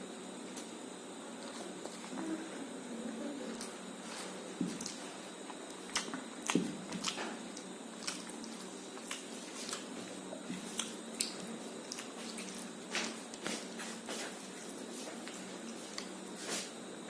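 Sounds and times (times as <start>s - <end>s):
wet chewing and mouth sounds: 3.4s - 16.8s.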